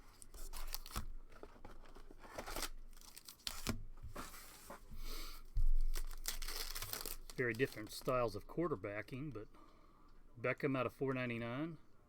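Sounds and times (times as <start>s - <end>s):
card pack wrapper tearing and crinkling: 0.0s - 1.1s, 1.9s - 3.8s, 5.8s - 8.2s.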